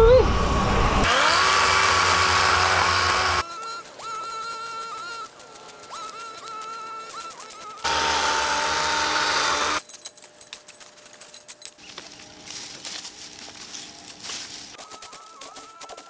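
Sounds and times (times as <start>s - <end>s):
electric chainsaw whine: 1.0s - 9.8s
scattered clicks and rustling: 3.4s - 7.9s, 9.8s - 16.0s.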